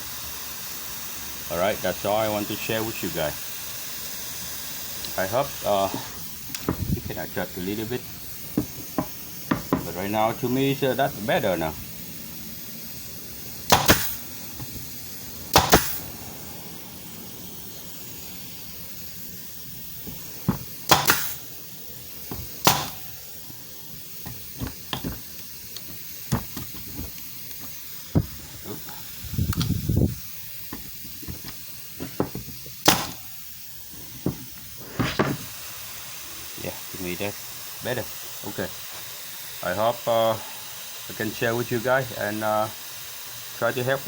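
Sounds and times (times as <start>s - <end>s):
hiss of exhaust air: 0.0s - 44.0s
nail gun firing: 13.7s - 14.2s, 15.5s - 16.1s, 20.5s - 21.5s, 22.4s - 23.2s, 32.2s - 33.4s
handling clicks and knocks: 20.1s - 21.4s, 24.2s - 28.4s.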